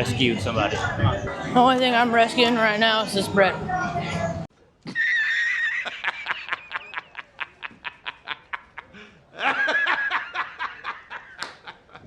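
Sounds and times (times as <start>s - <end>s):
person laughing in high squeals: 4.9s - 7.0s.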